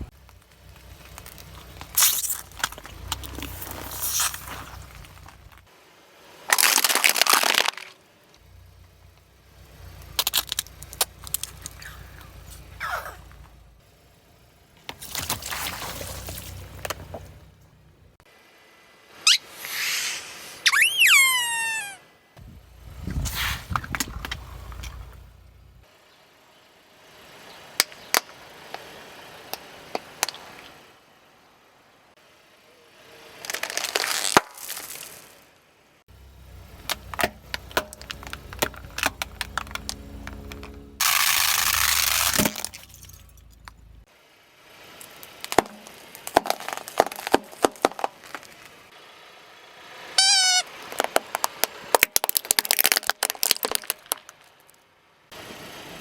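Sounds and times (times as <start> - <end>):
low engine rumble: 0.0 - 5.7, 7.9 - 18.3, 22.4 - 27.8, 35.9 - 50.2
objects crunching under car tyre: 0.0 - 5.7, 6.5 - 17.9, 22.4 - 25.8, 33.4 - 35.4, 36.1 - 44.1, 45.0 - 48.9, 50.8 - 54.8
falling whistle sound effect: 20.6 - 22.0.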